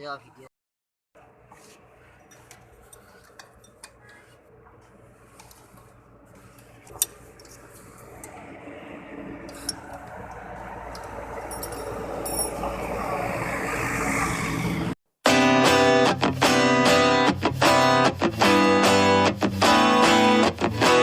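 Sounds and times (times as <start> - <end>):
guitar music: 15.3 - 21.0.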